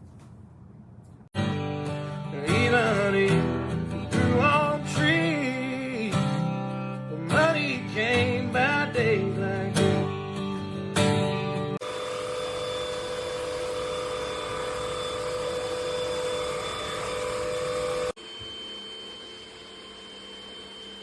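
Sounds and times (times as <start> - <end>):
country song: 1.4 - 11.7
strummed acoustic guitar: 1.4 - 11.8
person singing: 2.3 - 10.3.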